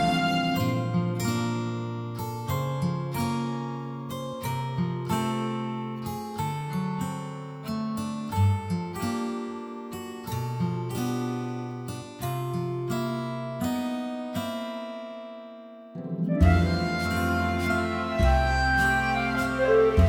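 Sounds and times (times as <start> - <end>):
plucked acoustic guitar melody: 0.0 - 20.0.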